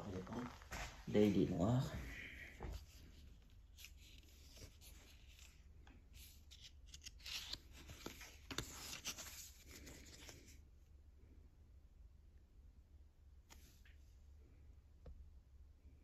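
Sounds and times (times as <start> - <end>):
trading cards rustling and scraping: 2.5 - 10.6.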